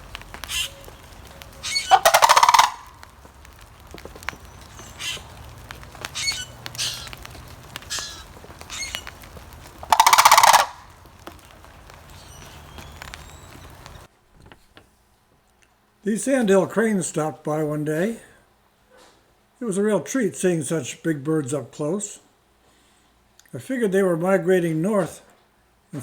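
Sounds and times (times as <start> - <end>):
cranes rattling calls: 0.0 - 14.1.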